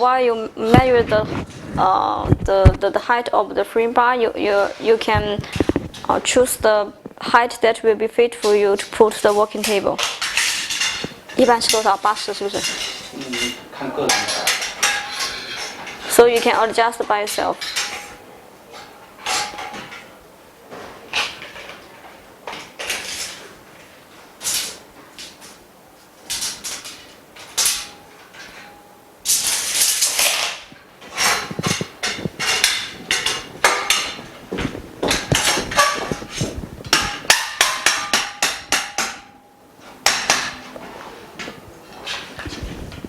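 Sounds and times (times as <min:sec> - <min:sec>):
metal bars knocking and clinking: 0:09.7 - 0:20.1, 0:26.3 - 0:40.8
rapid tapping on metal: 0:31.2 - 0:39.3.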